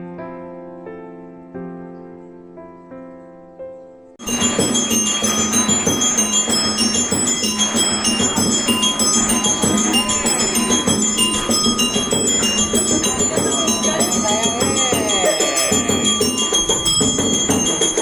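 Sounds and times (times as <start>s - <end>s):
bell-like tune: 4.2s - 18.0s.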